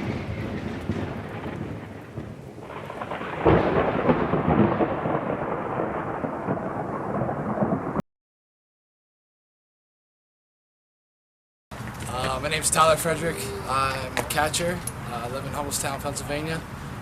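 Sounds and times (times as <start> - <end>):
rain: 0.0 - 8.0, 11.8 - 17.0
thunder crack and rumble: 0.0 - 8.0.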